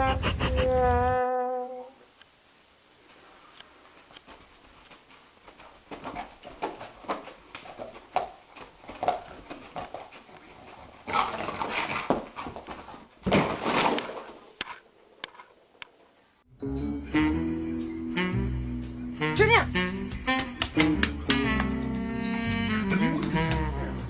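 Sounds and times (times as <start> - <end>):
dog whimpering: 0.0 - 1.9.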